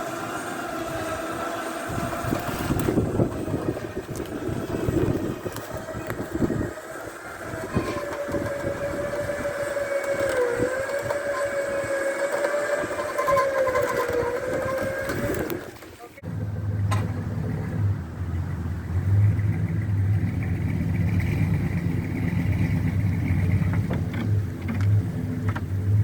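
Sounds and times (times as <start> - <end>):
winch motor whining: 0.0 - 26.0
metal scraping and clanking: 7.4 - 16.0.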